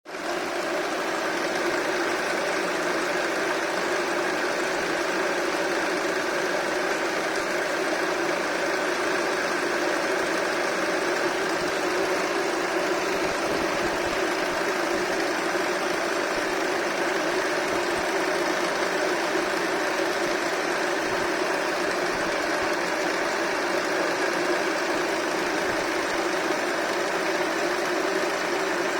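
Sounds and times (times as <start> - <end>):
car engine running: 0.4 - 28.9.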